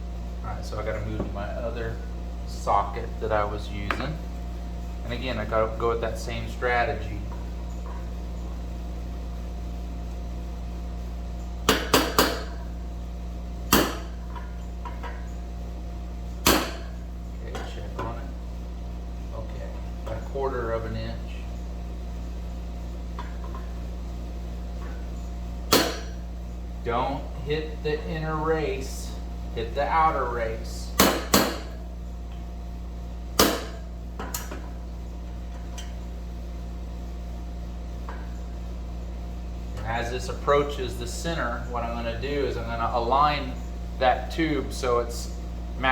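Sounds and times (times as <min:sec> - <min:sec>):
hammer striking metal: 0:13.7 - 0:14.2, 0:16.5 - 0:16.9, 0:25.7 - 0:26.2, 0:31.0 - 0:31.8.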